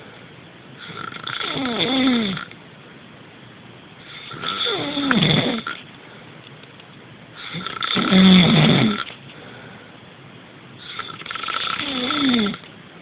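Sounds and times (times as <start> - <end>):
person snoring: 0.8 - 2.5, 4.1 - 5.8, 7.4 - 9.1, 10.8 - 12.6.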